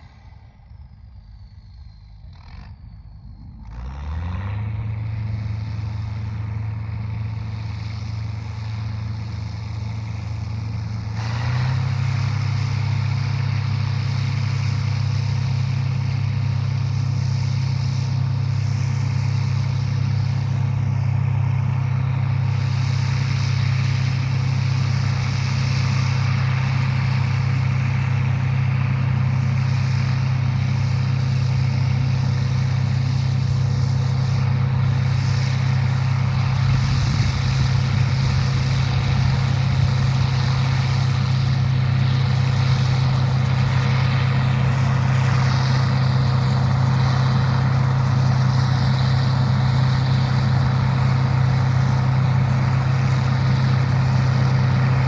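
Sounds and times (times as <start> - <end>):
farm machinery engine droning: 0.0 - 55.0.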